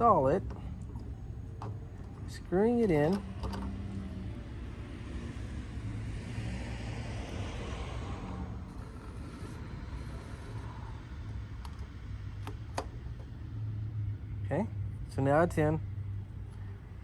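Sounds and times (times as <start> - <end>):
fuel cap rubbing: 0.4 - 3.9.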